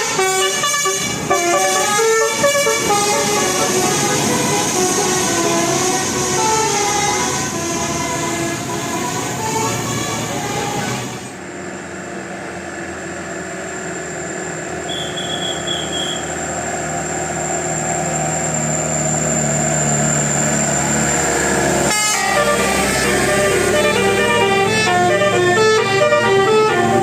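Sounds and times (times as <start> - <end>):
bus multi-tone horn tune: 0.0 - 11.4, 14.8 - 16.4, 19.7 - 27.0
bus engine running: 0.0 - 27.0.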